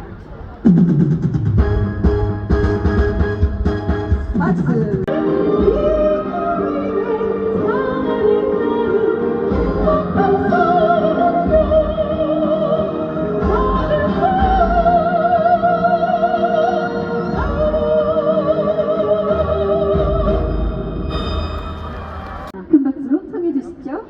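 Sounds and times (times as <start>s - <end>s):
low bass beats: 0.0s - 5.1s.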